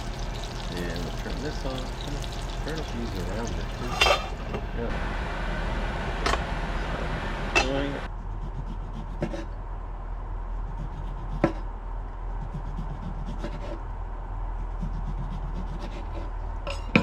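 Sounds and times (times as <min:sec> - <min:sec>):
utensil scraping a pan: 0:00.0 - 0:04.5.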